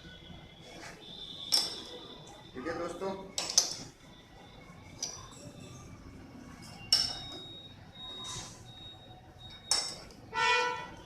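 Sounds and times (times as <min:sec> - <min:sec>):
metal tools clinking: 0:03.3 - 0:03.9, 0:05.0 - 0:05.8, 0:06.6 - 0:07.5, 0:09.6 - 0:10.2.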